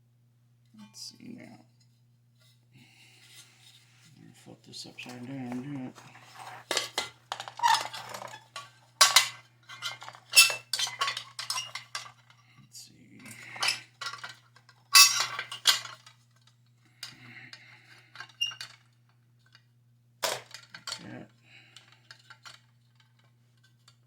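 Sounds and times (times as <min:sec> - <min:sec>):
metal burner clinking and scraping: 0:06.4 - 0:12.2.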